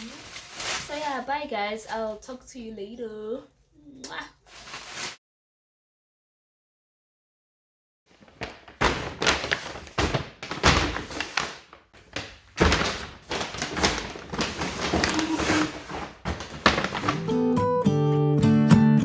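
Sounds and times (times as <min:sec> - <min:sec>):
objects knocking and thudding: 0:08.1 - 0:17.3.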